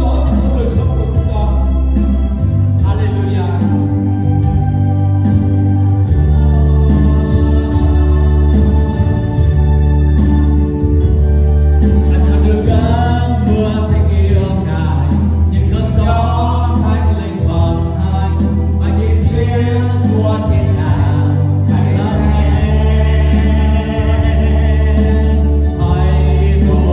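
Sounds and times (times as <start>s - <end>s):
band with heavy bass: 0.0s - 26.9s
group of voices singing: 6.1s - 9.8s, 12.1s - 26.9s.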